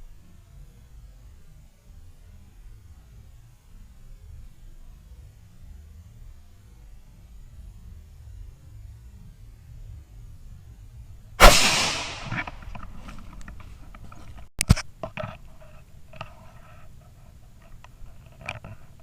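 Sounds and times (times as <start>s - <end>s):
rifle shot with echo: 11.4s - 12.6s
small clicks and rustles: 12.4s - 19.0s.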